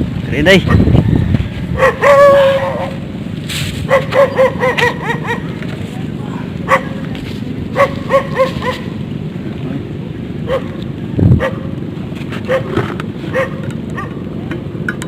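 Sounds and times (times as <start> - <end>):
low background rumble: 0.0 - 15.0
dog barking: 1.8 - 3.0, 3.9 - 5.5, 6.7 - 7.0, 7.8 - 8.9, 10.5 - 10.8, 11.4 - 11.6, 12.5 - 12.7, 13.3 - 14.2.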